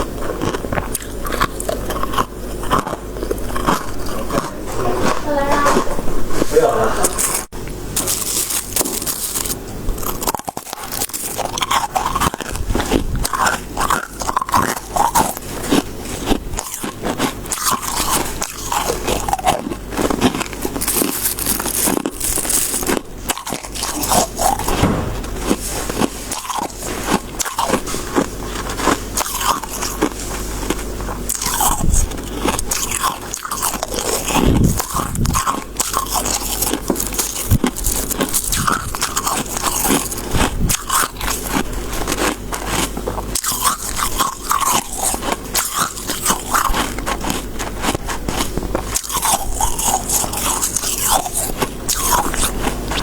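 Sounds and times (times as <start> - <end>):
chewing crunchy ice: 0.0 - 53.0.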